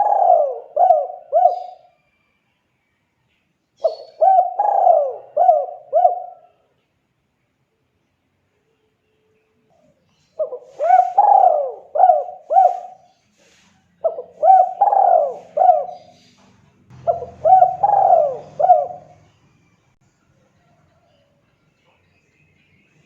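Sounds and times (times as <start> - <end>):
dove cooing: 0.0 - 2.0, 3.8 - 6.6, 10.2 - 19.3.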